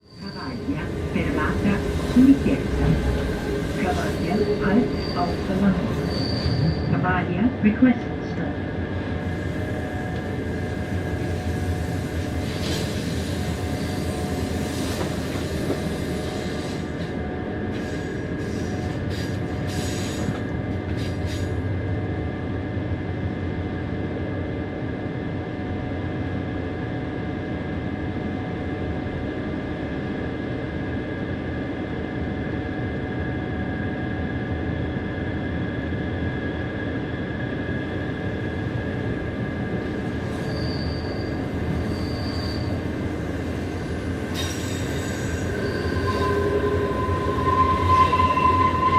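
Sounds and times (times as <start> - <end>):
train wheels rumbling: 38.2 - 48.9.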